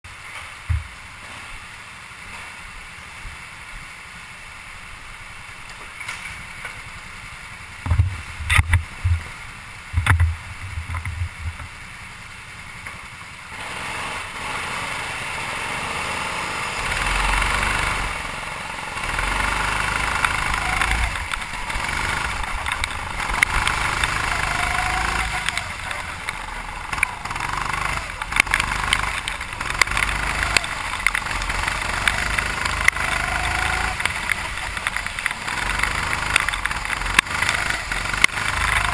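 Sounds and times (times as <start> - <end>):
heavy rain hiss: 0.1 - 38.9
go-kart engine running: 6.2 - 38.9
wet tyre spray hiss: 11.7 - 38.9.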